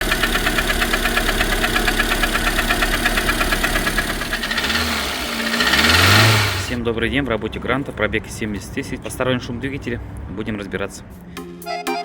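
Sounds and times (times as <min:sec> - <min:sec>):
car engine idling with knock: 0:00.0 - 0:07.4.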